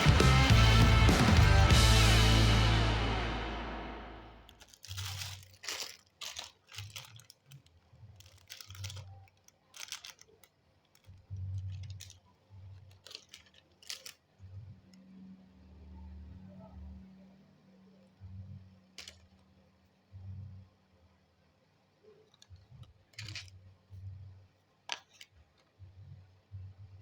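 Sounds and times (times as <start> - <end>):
plastic and cardboard crinkling: 4.4 - 14.9, 18.9 - 19.4, 22.2 - 24.1, 24.8 - 25.8.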